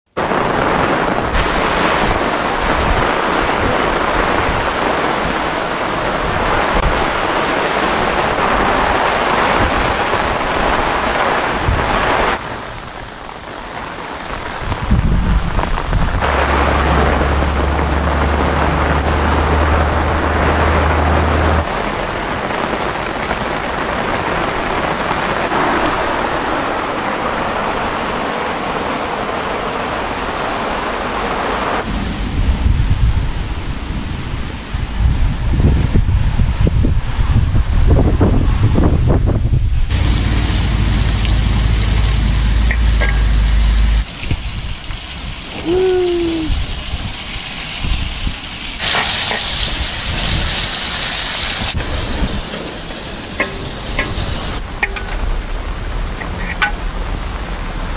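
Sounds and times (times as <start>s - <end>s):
heavy pouring rain: 0.1s - 57.9s
low steady rumble: 39.9s - 44.1s.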